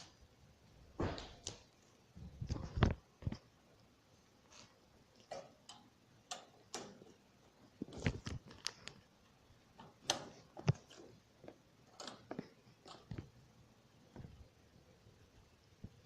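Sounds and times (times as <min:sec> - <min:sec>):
computer parts clicking and knocking: 0:05.1 - 0:09.0, 0:09.7 - 0:13.4.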